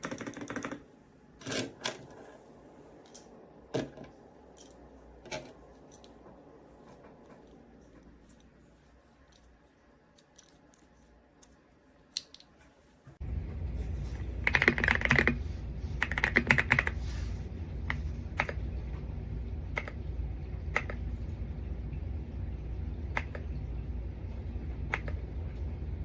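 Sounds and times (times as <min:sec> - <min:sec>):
typing on mechanical keyboard: 0:00.0 - 0:00.8, 0:14.4 - 0:15.4, 0:16.0 - 0:17.0
steady low hum: 0:13.0 - 0:26.0.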